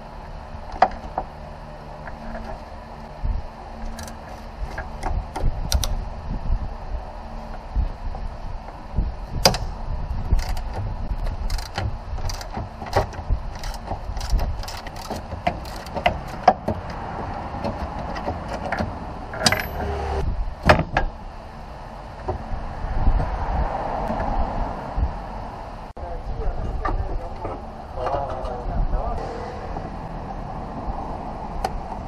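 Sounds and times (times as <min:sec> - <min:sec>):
low rumble: 0:02.1 - 0:14.8, 0:16.2 - 0:32.0
metallic tool clicks and clanks: 0:11.4 - 0:16.4.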